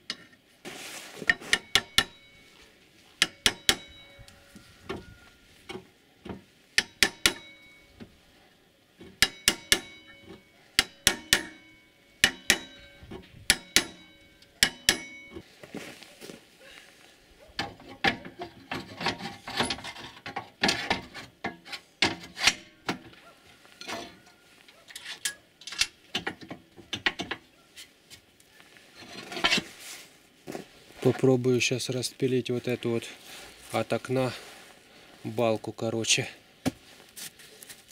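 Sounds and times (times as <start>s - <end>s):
metallic clinks and knocks: 1.3s - 8.2s, 9.0s - 15.5s
scraping and rubbing: 28.8s - 31.2s.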